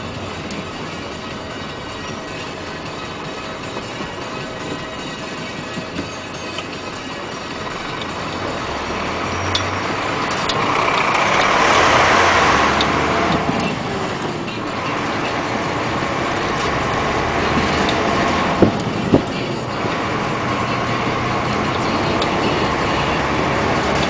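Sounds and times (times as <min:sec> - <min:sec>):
heavy truck passing: 0:00.0 - 0:24.0.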